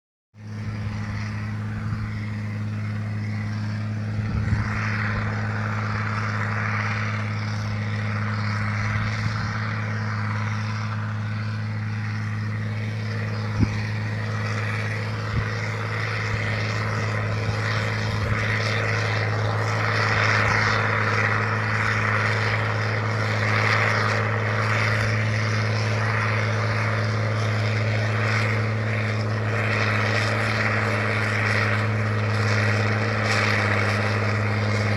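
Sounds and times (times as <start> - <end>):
tractor diesel engine running: 0.4 - 34.9.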